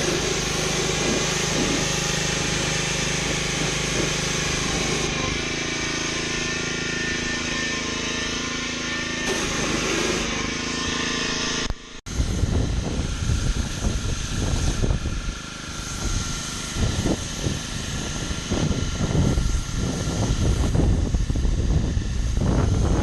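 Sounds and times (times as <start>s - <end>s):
high-pressure spray hissing: 0.0s - 6.6s, 8.8s - 11.6s
pressure washer engine running: 0.0s - 23.0s
gusty low rumble: 12.1s - 23.0s.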